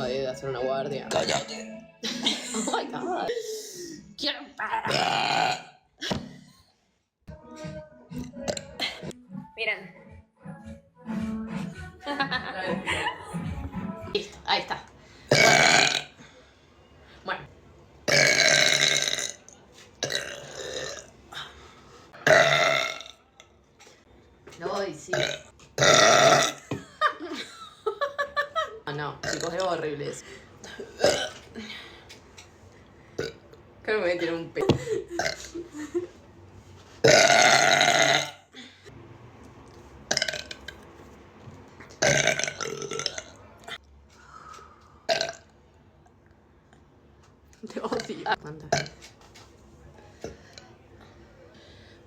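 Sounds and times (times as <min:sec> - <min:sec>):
woman burping: 0:01.0 - 0:03.8, 0:04.7 - 0:06.4, 0:15.3 - 0:16.2, 0:18.1 - 0:19.4, 0:20.0 - 0:21.5, 0:22.2 - 0:23.2, 0:25.1 - 0:26.8, 0:29.2 - 0:29.6, 0:30.6 - 0:31.7, 0:33.2 - 0:33.4, 0:35.1 - 0:35.6, 0:37.0 - 0:38.5, 0:40.1 - 0:40.7, 0:42.0 - 0:43.8, 0:45.1 - 0:45.4, 0:47.9 - 0:49.0.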